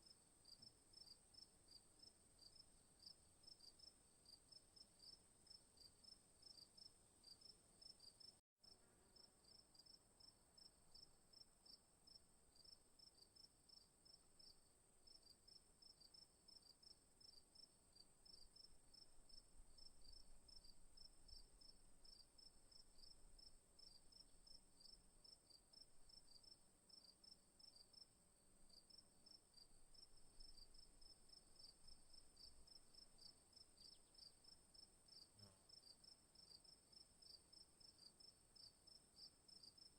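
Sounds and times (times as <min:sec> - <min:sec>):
crickets chirping: 0:12.1 - 0:39.9.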